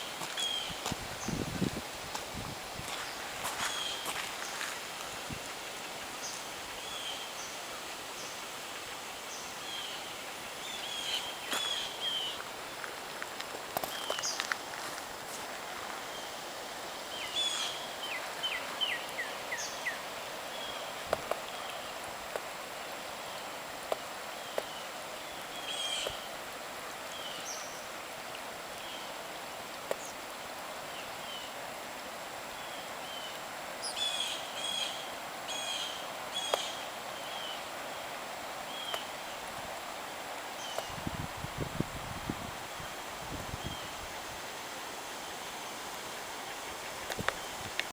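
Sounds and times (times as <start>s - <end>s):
floodwater rushing: 0.0s - 33.9s
birds chirping: 2.9s - 4.8s.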